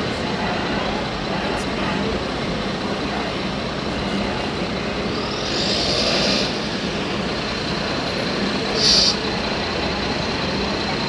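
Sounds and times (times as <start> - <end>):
outdoor background noise: 0.0 - 11.0
short hiss: 5.2 - 6.7, 8.7 - 9.2.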